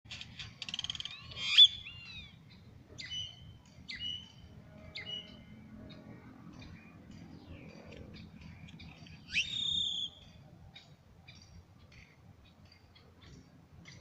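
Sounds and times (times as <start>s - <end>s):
bird downward calls: 0.6s - 2.4s, 9.2s - 10.4s
bird rising whistle: 9.3s - 10.2s.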